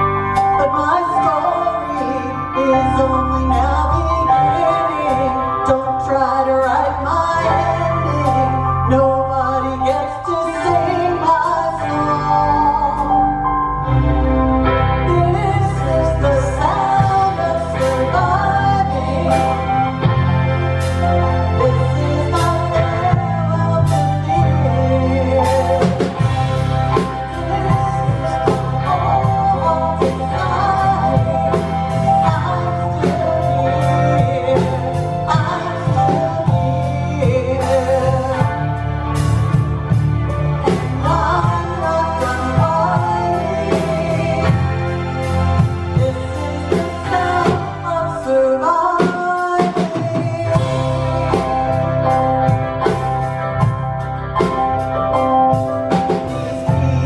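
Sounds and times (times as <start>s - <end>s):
bass: 0.0s - 57.0s
live band playing rock ballad: 0.0s - 57.0s
woman singing: 0.4s - 39.6s, 40.2s - 53.8s, 55.5s - 57.0s
drum kit beat: 16.7s - 48.0s, 48.9s - 57.0s.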